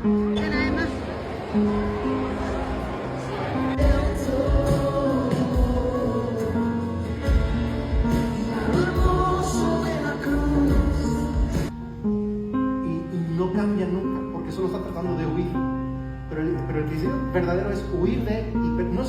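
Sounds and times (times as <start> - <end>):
worship song singing: 1.3 - 11.8.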